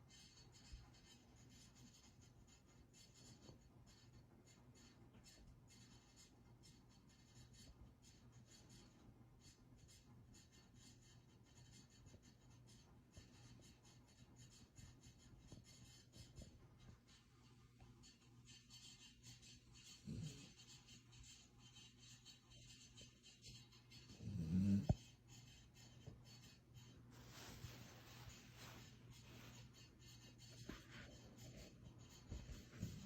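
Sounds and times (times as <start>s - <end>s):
dog snoring faintly: 19.8s - 20.9s, 24.0s - 25.2s.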